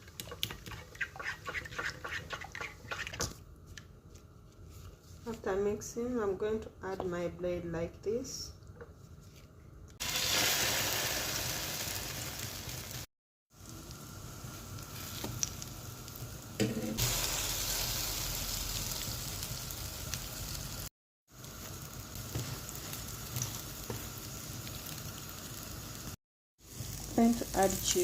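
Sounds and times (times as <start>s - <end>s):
bread sizzling in a frying pan: 10.0s - 28.0s.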